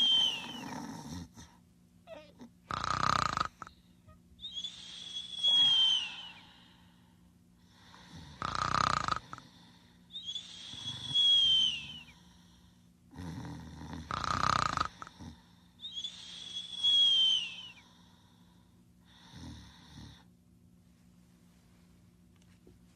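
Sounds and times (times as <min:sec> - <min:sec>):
high whistling breath: 0:00.0 - 0:00.8, 0:04.4 - 0:07.2, 0:10.0 - 0:12.6, 0:15.8 - 0:18.5
snoring: 0:00.0 - 0:01.5, 0:02.1 - 0:03.8, 0:07.7 - 0:09.6, 0:10.6 - 0:12.2, 0:13.1 - 0:15.4, 0:19.1 - 0:20.3.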